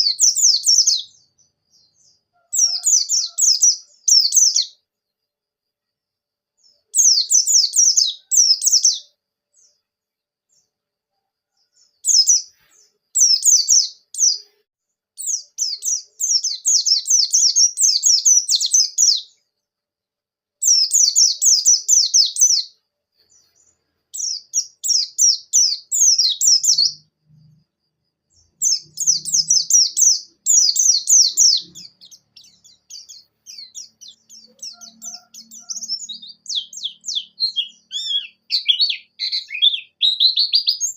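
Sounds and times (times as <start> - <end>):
bird twittering trills: 0.0 - 4.8, 28.4 - 40.9.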